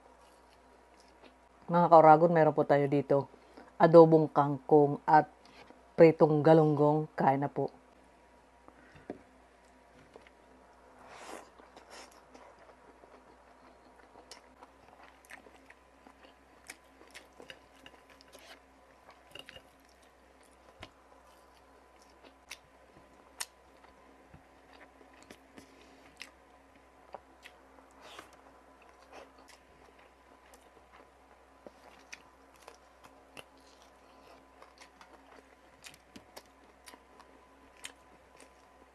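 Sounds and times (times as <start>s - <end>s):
chewing with small crunches: 0.0s - 1.5s, 9.6s - 38.9s.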